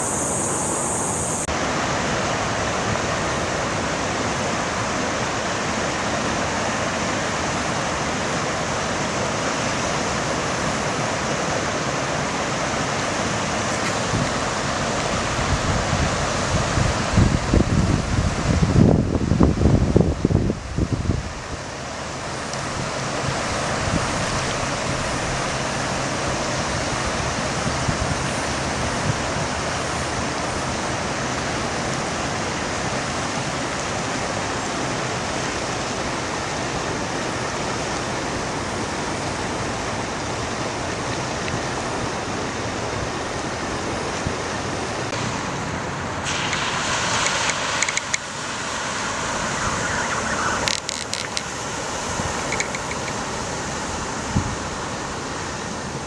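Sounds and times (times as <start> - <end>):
hissing sound: 0.0 - 1.5, 46.2 - 53.2
floodwater rushing: 0.0 - 56.0.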